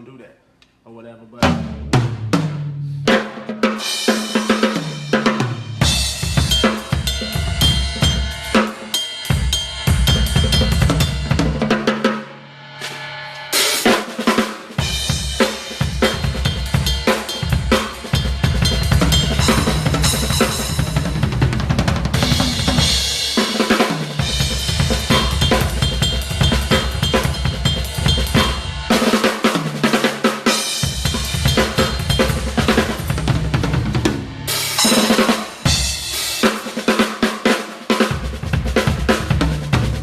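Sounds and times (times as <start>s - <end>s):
drum kit groove: 1.4s - 40.0s
crashing cymbals: 5.8s - 11.4s, 12.2s - 21.4s, 22.1s - 36.7s.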